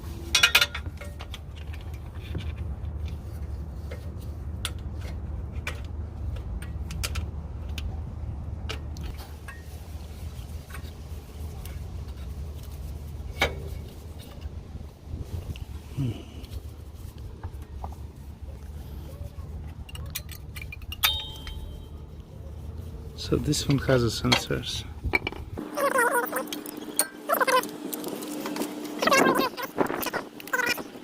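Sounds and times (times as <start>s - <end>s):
steady low hum: 0.0s - 31.0s
metallic clicks of hand tools: 19.9s - 21.9s.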